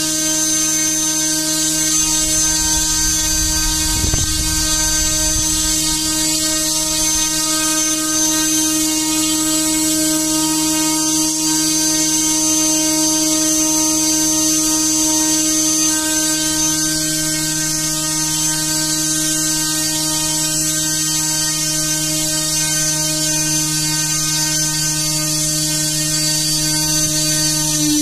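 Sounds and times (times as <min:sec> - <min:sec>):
motor and propeller hum: 0:00.0 - 0:21.1
high airy hiss: 0:01.8 - 0:08.4.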